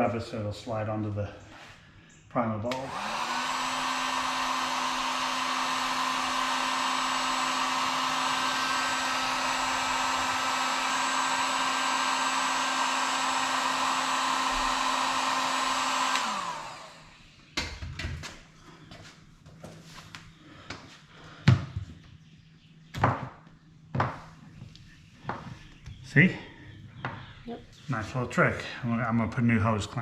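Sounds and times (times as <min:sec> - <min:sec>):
heat gun blowing with fan whine: 0:02.6 - 0:17.6.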